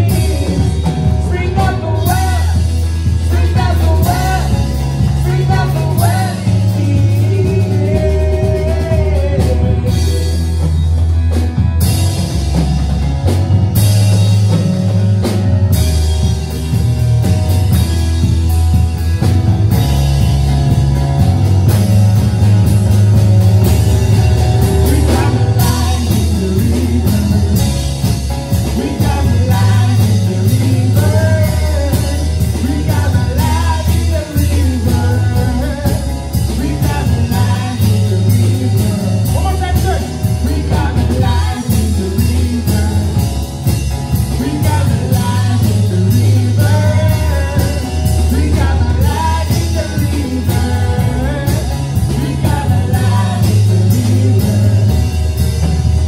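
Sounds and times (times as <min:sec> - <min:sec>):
person singing: 0:00.0 - 0:10.8, 0:24.5 - 0:55.7
band playing: 0:00.0 - 0:56.0.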